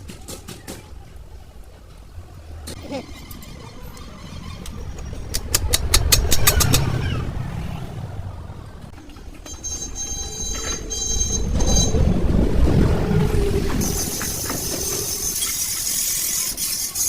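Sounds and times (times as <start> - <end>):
heavy vehicle engine rumbling: 0.8 - 16.3
sharp metallic clicks: 2.7 - 6.9
high-pitched squeal: 9.0 - 12.4, 13.2 - 17.0.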